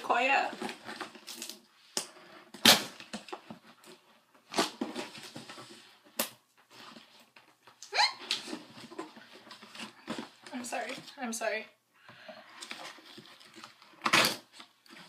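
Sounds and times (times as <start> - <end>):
packing tape ripping: 0.6 - 1.7, 2.6 - 3.3
tape squealing: 7.8 - 8.5.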